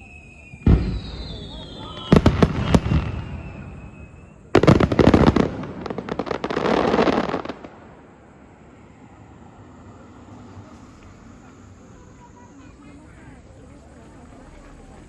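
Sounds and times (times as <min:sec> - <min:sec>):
firework falling whistle: 0:00.0 - 0:07.6
firework burst: 0:00.0 - 0:08.6
firework cracks and crackle: 0:00.4 - 0:08.3.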